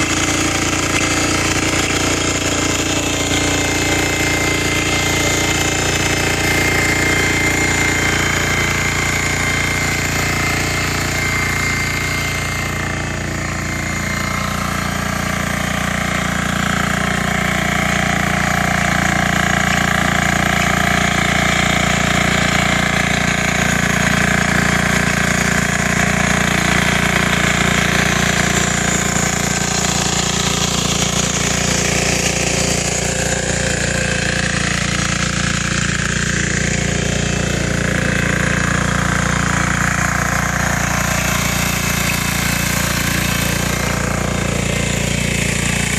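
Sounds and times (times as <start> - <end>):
tiller engine clattering: 0.0 - 45.9.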